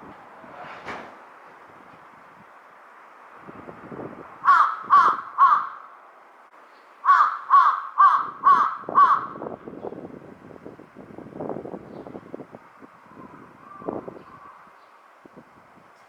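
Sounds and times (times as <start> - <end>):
crow cawing: 4.4 - 6.0, 7.0 - 9.4.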